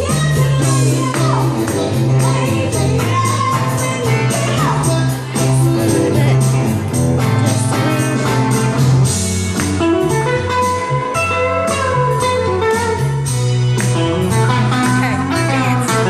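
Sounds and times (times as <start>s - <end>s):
bluesy guitar music with beat: 0.0s - 16.0s.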